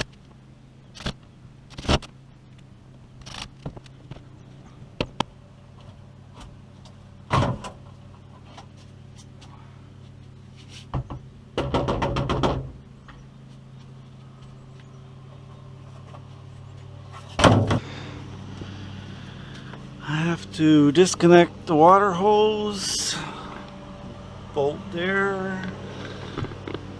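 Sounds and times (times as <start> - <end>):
low hum: 0.0 - 26.9
wooden panels knocking and clattering: 10.9 - 12.7.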